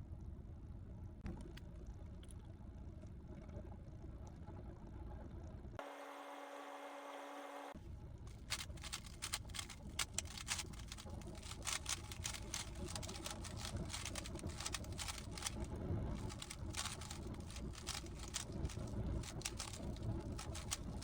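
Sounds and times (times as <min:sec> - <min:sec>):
low handling rumble: 0:08.1 - 0:21.0
puzzle cube plastic clicks: 0:08.3 - 0:21.0.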